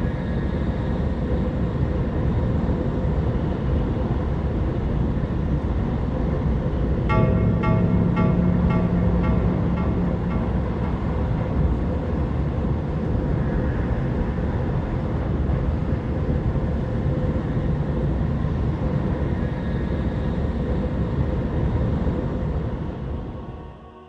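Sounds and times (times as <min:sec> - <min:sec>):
loud low rumbling: 0:07.1 - 0:14.2.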